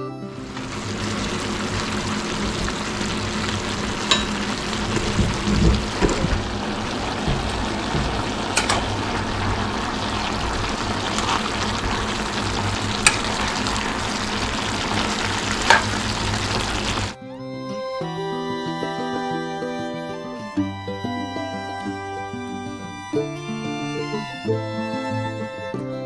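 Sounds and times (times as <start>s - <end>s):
music: 0.0s - 1.5s, 17.2s - 26.0s
squash sizzling in a frying pan: 0.4s - 17.2s.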